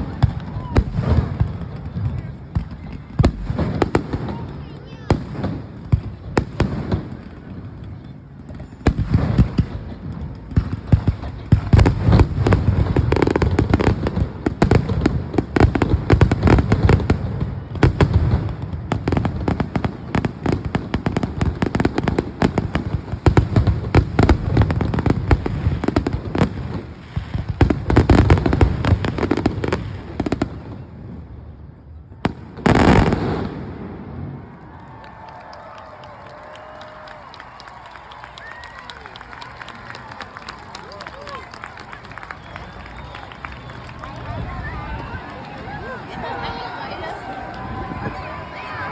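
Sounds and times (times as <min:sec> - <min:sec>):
fireworks bangs and crackles: 0:00.0 - 0:37.5.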